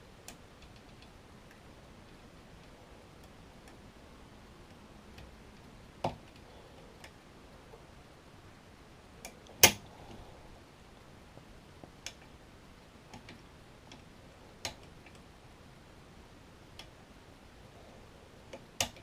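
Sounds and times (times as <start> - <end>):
lock pick metallic clicks: 9.2 - 9.8.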